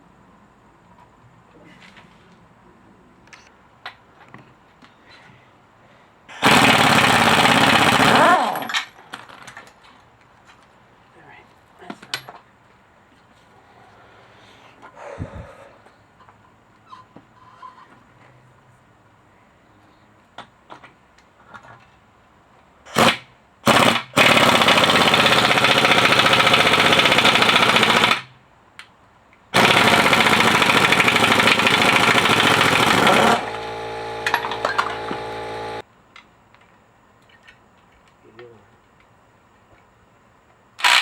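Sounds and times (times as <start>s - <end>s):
hammering power tool: 6.4s - 8.0s, 23.0s - 28.2s, 29.6s - 35.8s.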